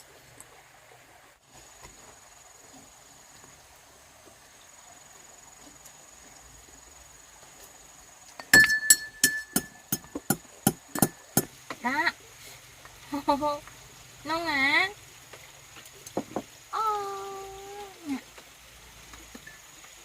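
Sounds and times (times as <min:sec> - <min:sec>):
hammer striking metal: 0:08.4 - 0:11.5.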